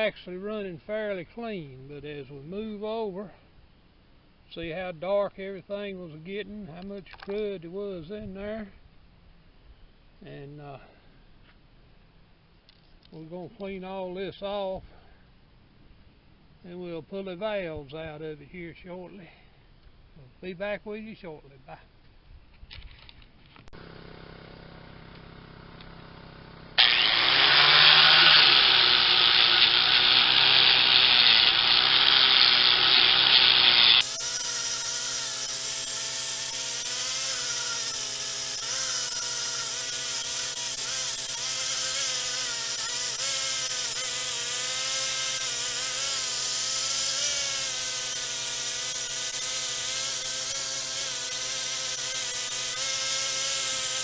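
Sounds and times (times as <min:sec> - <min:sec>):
power tool scrubbing metal: 0:26.8 - 0:54.0.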